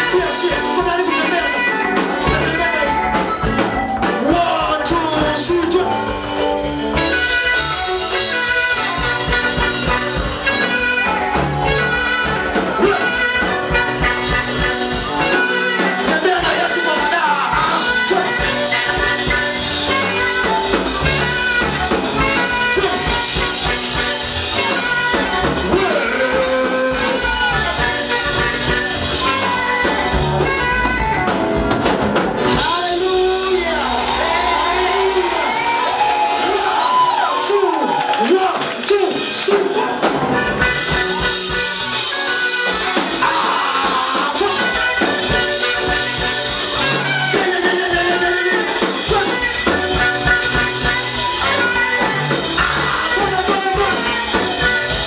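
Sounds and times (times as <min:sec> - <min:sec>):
church praise band playing: 0:00.0 - 0:55.0
voices singing: 0:43.1 - 0:45.4.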